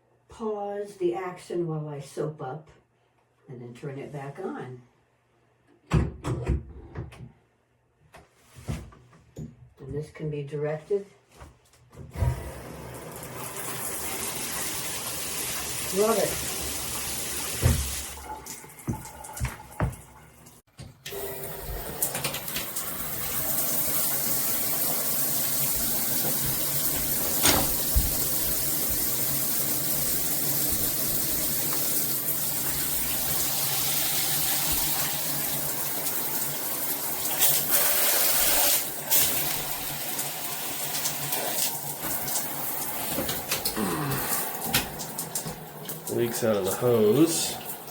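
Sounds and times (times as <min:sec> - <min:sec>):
shower water spraying: 0:12.4 - 0:19.9, 0:21.1 - 0:47.9.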